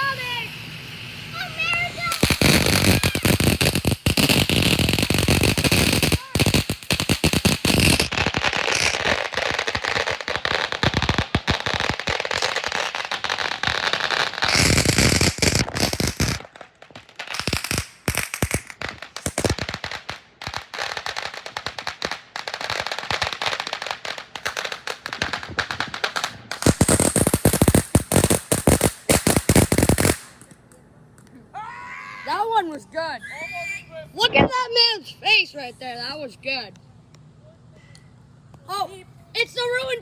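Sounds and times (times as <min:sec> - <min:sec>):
fireworks crackling pops: 0:00.0 - 0:31.4, 0:34.3 - 0:34.8.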